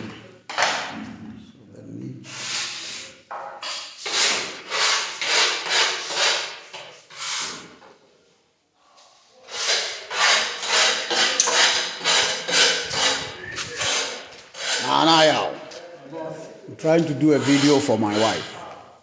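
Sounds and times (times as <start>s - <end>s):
rhythmic scraping strokes: 9.5s - 15.8s, 16.8s - 18.7s.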